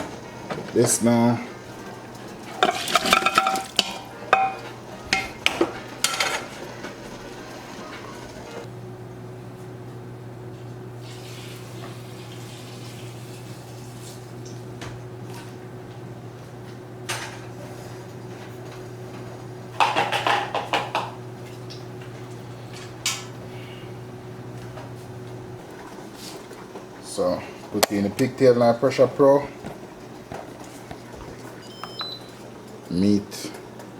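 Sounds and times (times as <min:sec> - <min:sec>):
pots and utensils clattering: 0:00.0 - 0:08.7, 0:19.7 - 0:21.2
steady low hum: 0:21.1 - 0:33.9.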